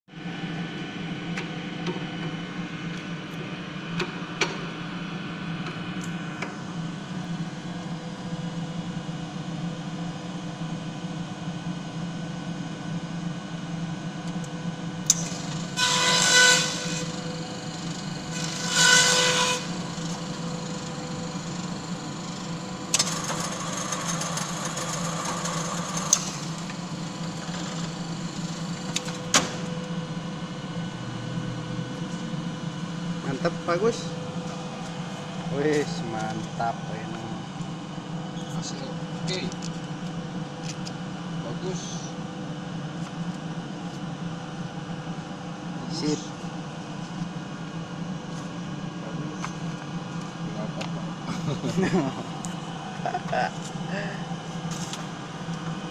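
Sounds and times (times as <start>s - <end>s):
binding machine humming: 14.2s - 41.2s.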